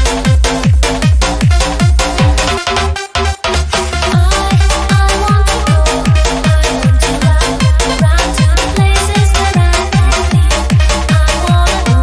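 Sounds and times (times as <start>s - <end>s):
booming kick drums: 0.0s - 2.5s, 4.0s - 12.0s.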